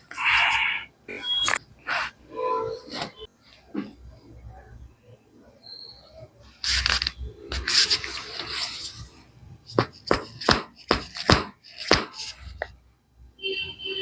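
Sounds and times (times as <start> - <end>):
rustling and scraping on a table: 1.9 - 4.2, 6.6 - 12.8.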